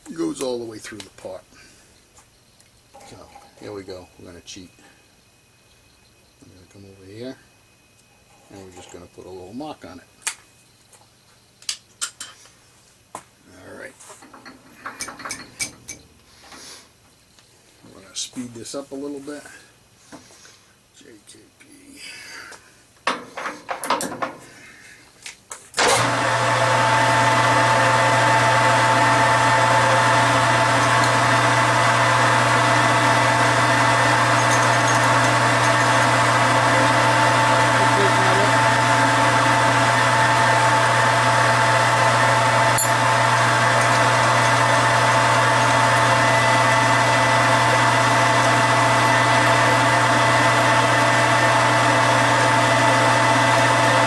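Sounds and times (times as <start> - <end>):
metal lathe motor hum and whine: 25.8 - 54.0.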